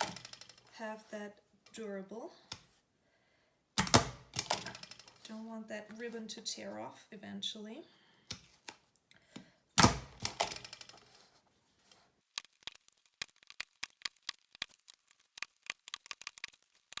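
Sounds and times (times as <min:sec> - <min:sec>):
stapler punching a staple: 0:03.8 - 0:04.8.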